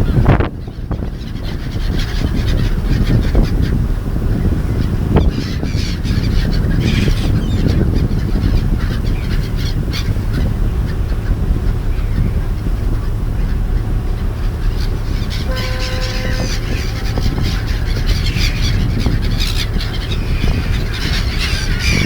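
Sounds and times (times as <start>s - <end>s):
seagulls calling: 0.0s - 22.0s
steady low rumble: 0.0s - 22.0s.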